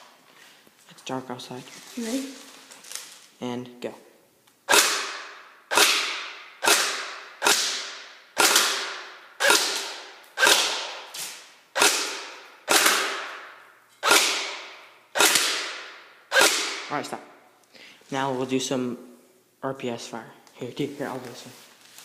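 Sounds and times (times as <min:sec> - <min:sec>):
airsoft rifle shots: 0:04.7 - 0:11.1, 0:11.7 - 0:17.0.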